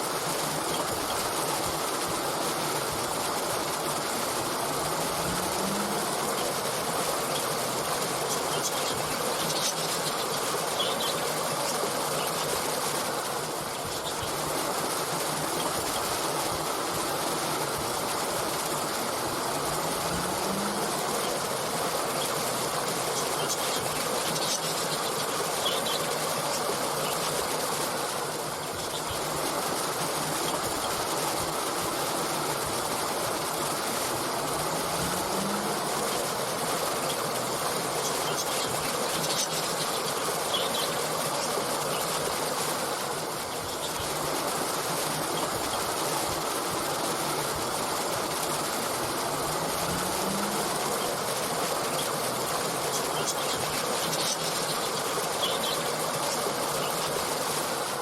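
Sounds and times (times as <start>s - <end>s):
stream water rushing: 0.0s - 58.0s
faint bird chirps: 8.2s - 12.6s, 37.9s - 42.4s, 52.8s - 57.2s.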